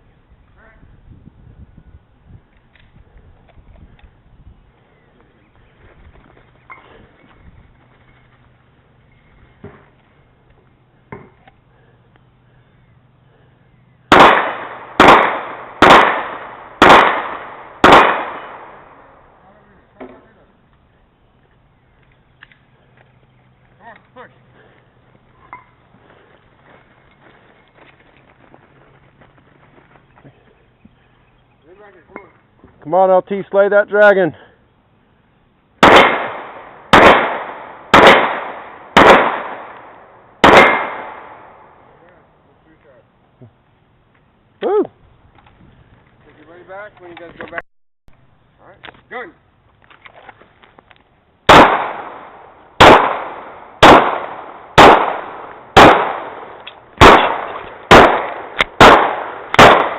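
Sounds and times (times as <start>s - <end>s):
handgun shots with echo: 14.1s - 19.0s, 35.8s - 41.6s, 51.5s - 59.9s.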